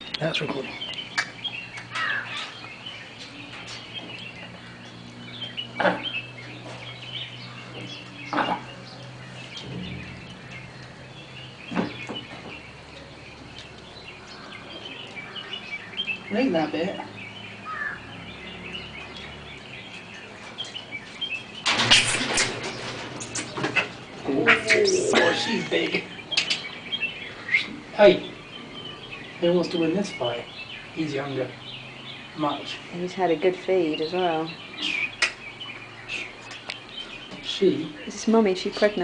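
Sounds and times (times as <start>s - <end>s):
steady low hum: 0.0s - 16.4s
birds chirping: 0.0s - 39.0s.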